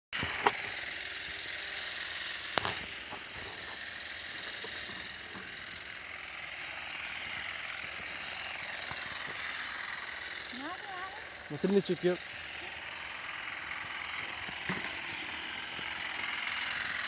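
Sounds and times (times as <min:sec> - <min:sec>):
small engine running: 0:00.1 - 0:17.0
sharp click: 0:02.5 - 0:02.8.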